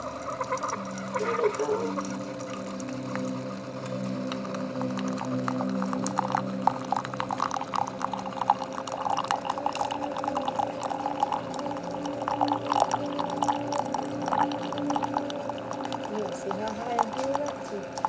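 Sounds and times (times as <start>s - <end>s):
coffee maker pump hum: 0.0s - 18.0s
coffee splashing into a mug: 0.1s - 18.0s.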